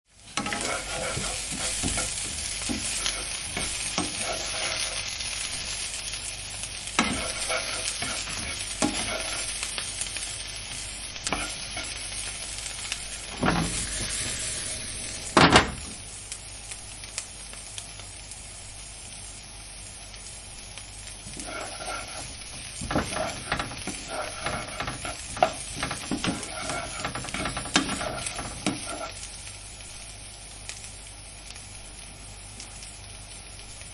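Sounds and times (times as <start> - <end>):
vegetables sizzling in a frying pan: 0.0 - 33.9
clattering strokes: 0.4 - 5.0, 21.3 - 29.1.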